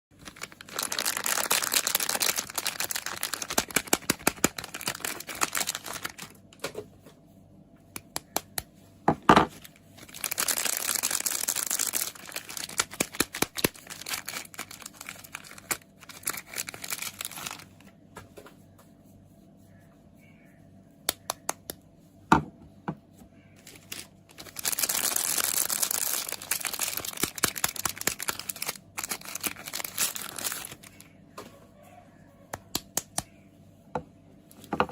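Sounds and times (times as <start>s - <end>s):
packaging crinkling and tearing: 0.1s - 6.6s, 9.6s - 17.9s, 23.6s - 31.1s.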